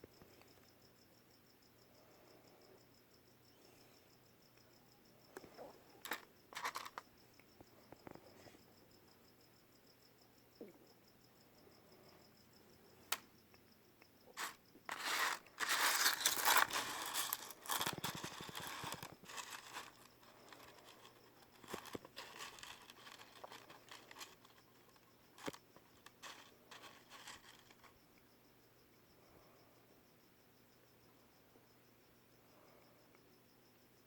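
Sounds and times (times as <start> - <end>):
crickets chirping: 0.0 - 34.0
paper or plastic crinkling: 14.4 - 27.9.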